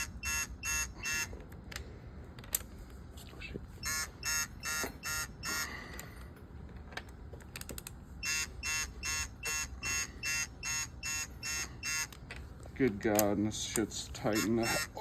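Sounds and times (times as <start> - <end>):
torque wrench beeping: 0.0 - 1.4, 3.8 - 5.8, 8.2 - 12.2, 14.2 - 15.0.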